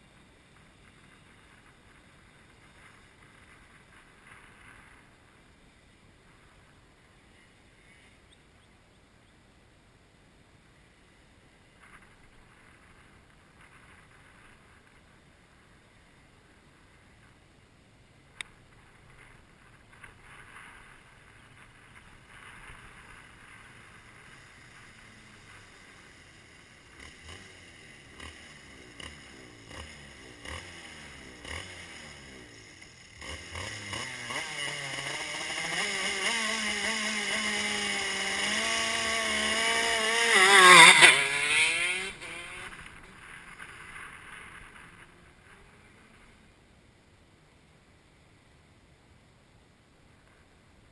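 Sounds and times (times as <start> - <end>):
kart engine passing at high revs: 20.0 - 46.5.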